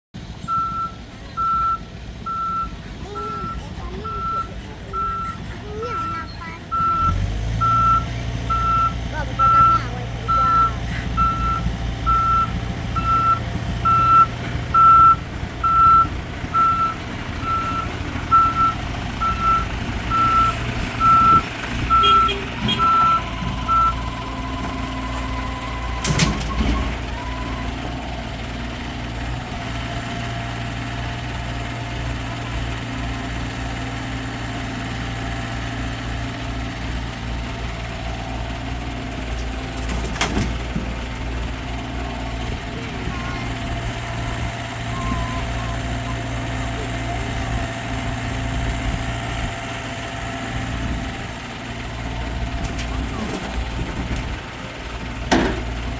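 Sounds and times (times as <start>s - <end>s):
diesel engine running: 0.1s - 55.9s
reverse alarm beeping: 0.5s - 5.4s, 6.7s - 27.7s.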